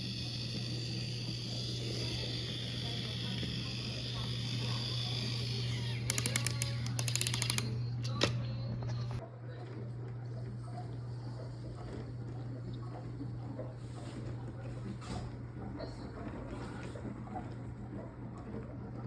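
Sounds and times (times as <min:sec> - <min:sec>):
toy train motor hum: 0:00.0 - 0:08.3
toy train clicks on wooden track: 0:04.9 - 0:07.7.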